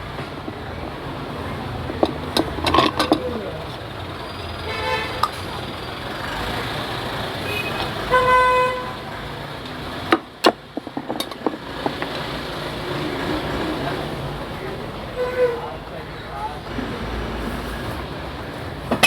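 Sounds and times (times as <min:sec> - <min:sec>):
road traffic: 0:00.0 - 0:19.0
vehicle horn toot: 0:04.6 - 0:05.3, 0:07.4 - 0:09.0, 0:15.2 - 0:15.8.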